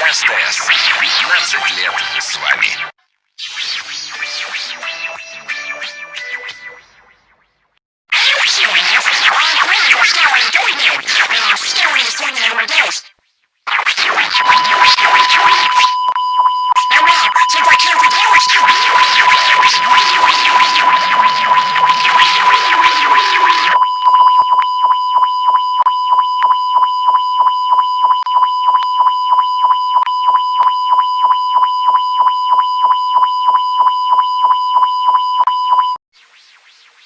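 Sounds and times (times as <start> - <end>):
harsh crackling noise: 0.0 - 6.5, 8.1 - 16.0, 16.8 - 23.8
rapid pulsing tone: 13.7 - 16.0, 16.8 - 23.8
steady test tone: 16.7 - 34.2.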